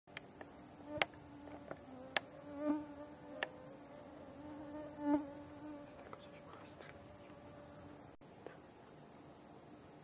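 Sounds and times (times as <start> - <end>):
insects chirring: 0.1 - 10.0
flying insect buzzing: 0.4 - 8.2.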